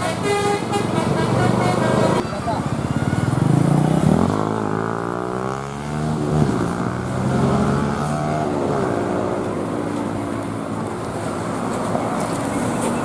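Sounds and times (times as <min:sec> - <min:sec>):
bus engine revving: 0:00.0 - 0:10.3.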